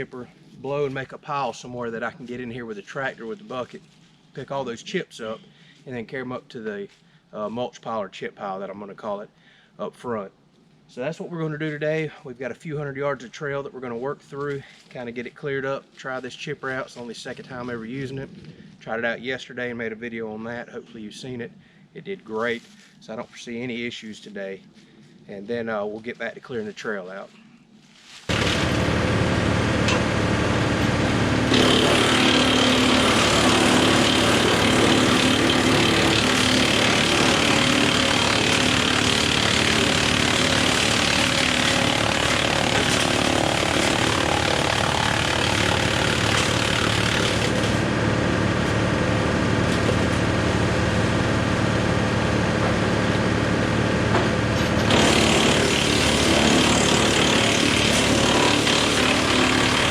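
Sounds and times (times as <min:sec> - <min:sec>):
tractor driving wood chipper: 0:28.3 - 0:59.9.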